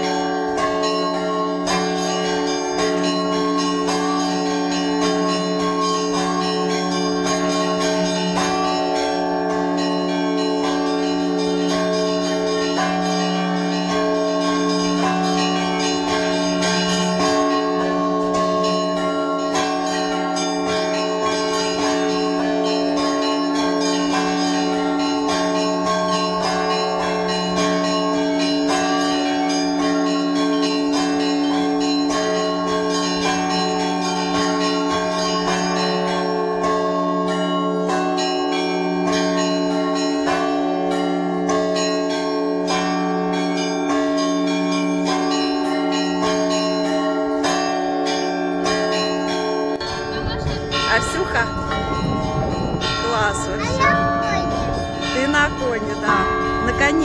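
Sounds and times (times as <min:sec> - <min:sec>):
church bells ringing: 0:00.0 - 0:57.0
low bell hum: 0:49.0 - 0:57.0.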